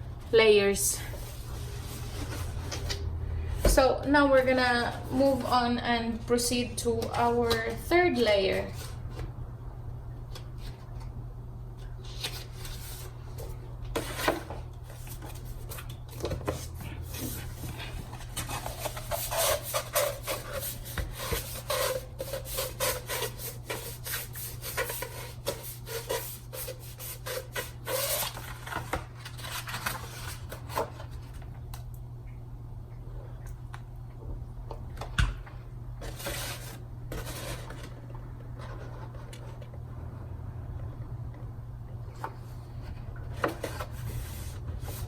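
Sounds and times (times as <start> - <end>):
steady low hum: 0.0 - 45.0
stiff paper scraping and crinkling: 12.0 - 31.4, 36.0 - 39.6.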